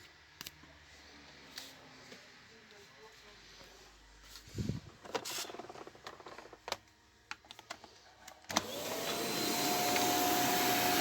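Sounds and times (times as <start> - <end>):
vacuum cleaner motor whine: 8.5 - 11.0.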